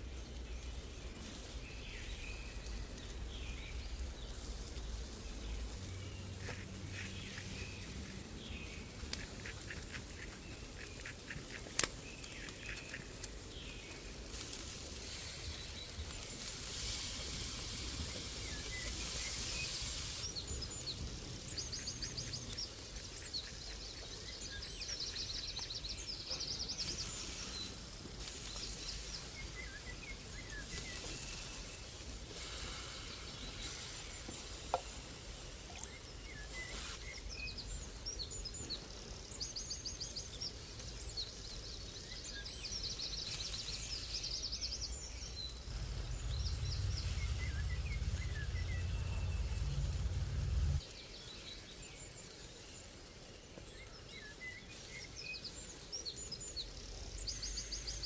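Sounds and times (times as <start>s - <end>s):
small birds chirping and trilling: 0.0s - 58.0s
hiss: 16.3s - 20.6s, 32.1s - 34.5s.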